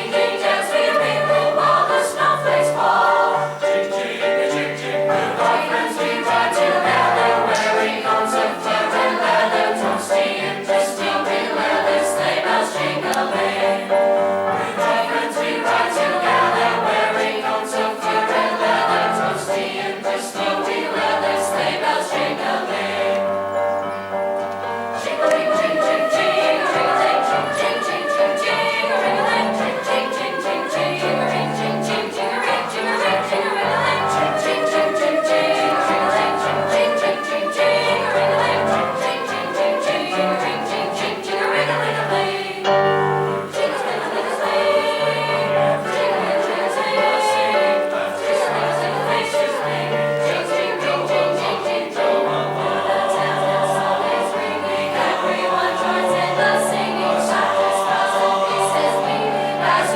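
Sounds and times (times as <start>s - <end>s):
chorus singing in parts: 0.0s - 59.9s
rhythmic accompaniment: 0.0s - 59.9s.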